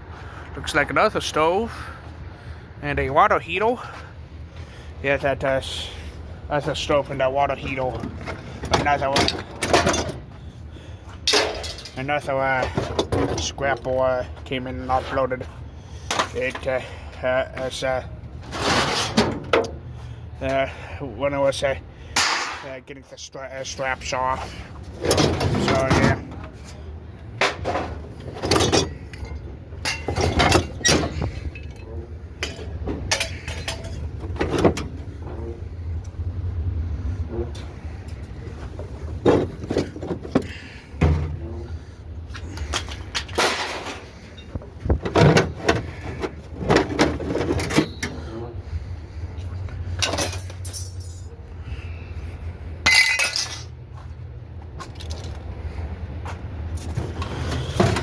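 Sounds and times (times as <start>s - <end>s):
scrap metal clanking: 5.6s - 20.7s, 24.0s - 35.7s, 37.4s - 48.9s, 49.8s - 51.3s, 56.8s - 58.0s
steady low rumble: 19.7s - 57.2s.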